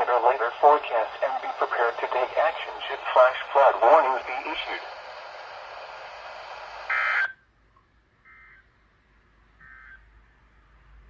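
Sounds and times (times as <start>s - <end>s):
radio hiss: 0.0s - 7.3s.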